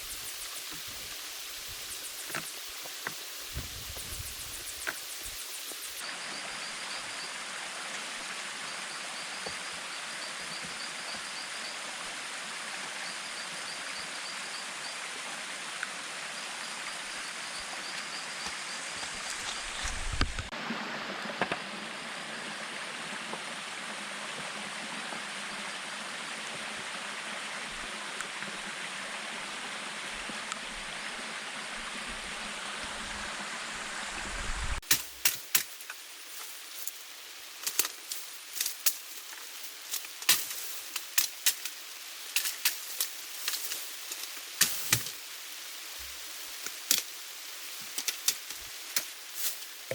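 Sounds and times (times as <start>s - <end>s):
water hissing: 0.0s - 6.2s, 32.3s - 49.9s.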